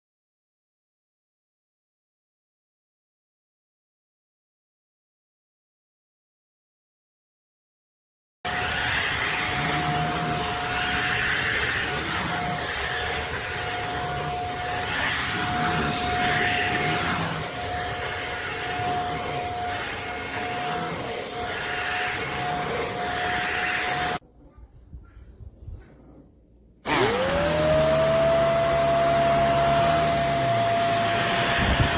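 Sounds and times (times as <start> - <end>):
handheld vacuum cleaner running: 8.5 - 24.2, 26.8 - 31.9.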